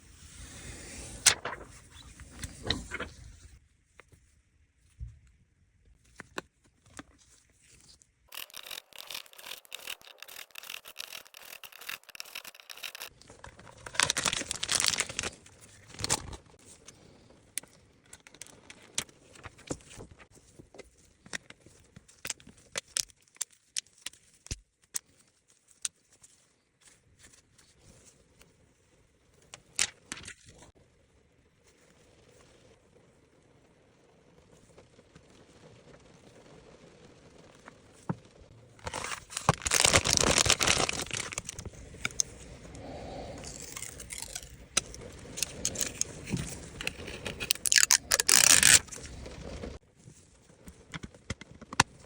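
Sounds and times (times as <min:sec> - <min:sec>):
scraping and rubbing: 0:07.1 - 0:15.4, 0:38.8 - 0:49.8.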